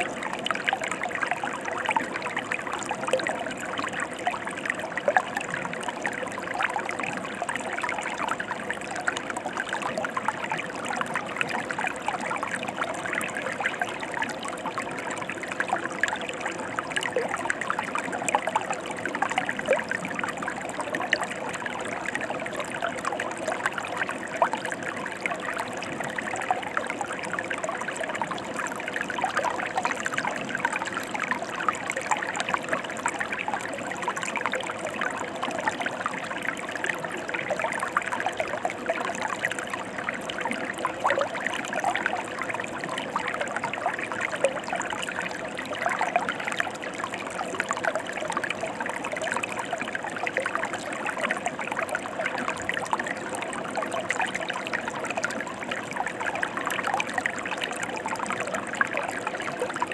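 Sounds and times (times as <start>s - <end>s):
stream flowing over rocks: 0.0s - 59.9s.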